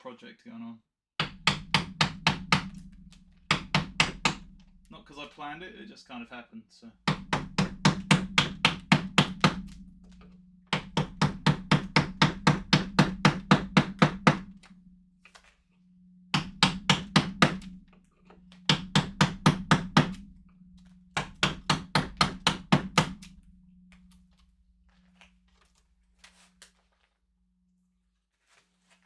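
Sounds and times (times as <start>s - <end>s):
mallet striking chisel into wood: 1.2s - 5.0s, 7.1s - 15.5s, 16.3s - 24.2s
steady low hum: 1.3s - 6.3s, 7.0s - 26.2s.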